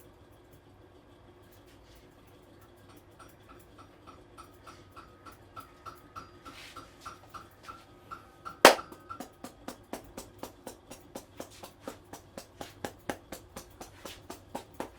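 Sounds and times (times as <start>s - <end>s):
rapid hand tapping on head: 8.7s - 14.9s.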